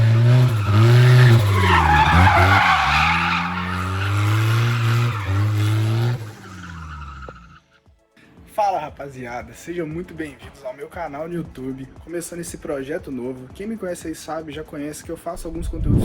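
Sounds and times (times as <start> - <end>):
car engine revving hard: 0.0 - 7.4
tyres squealing and skidding: 0.0 - 7.7.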